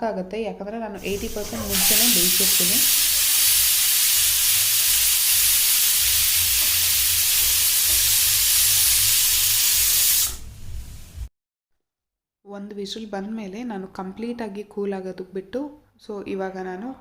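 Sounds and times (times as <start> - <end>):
pressure cooker steam hiss: 1.0 - 11.3.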